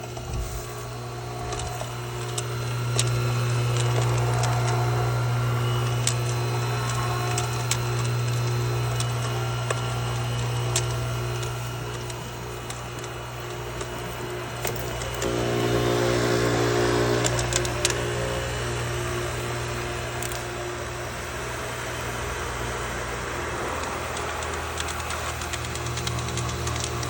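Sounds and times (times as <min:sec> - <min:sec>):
rattling ticks and clicks: 0:00.0 - 0:15.4, 0:23.6 - 0:27.0
pool pump humming: 0:00.0 - 0:27.0.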